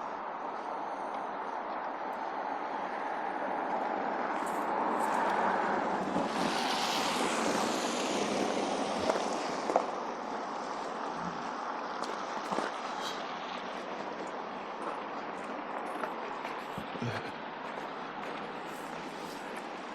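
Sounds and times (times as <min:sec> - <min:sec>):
steady traffic rumble: 0:00.0 - 0:19.9
car tyre hiss passing: 0:04.7 - 0:10.7.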